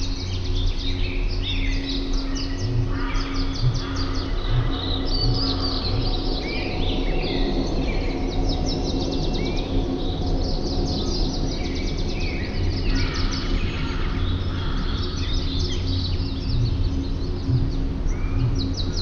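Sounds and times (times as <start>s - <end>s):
birds chirping and singing: 0.0s - 19.0s
low rumble: 0.0s - 19.0s.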